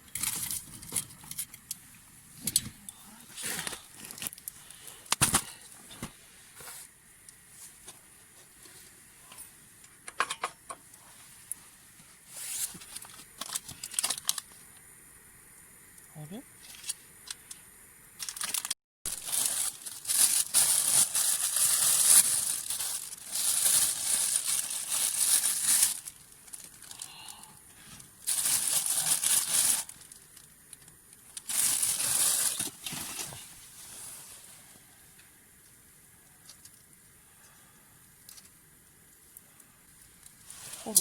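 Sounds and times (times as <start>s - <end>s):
crinkly rustling of material: 0.1s - 9.4s, 11.0s - 14.7s, 18.2s - 27.2s, 27.8s - 34.8s, 40.1s - 41.0s.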